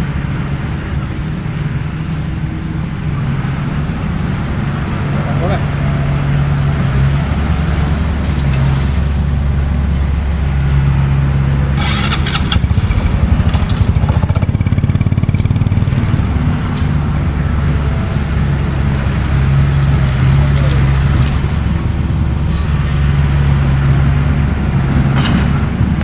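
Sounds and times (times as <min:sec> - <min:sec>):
bulldozer diesel engine droning: 0:00.0 - 0:26.0
harsh burst of noise: 0:11.8 - 0:22.1.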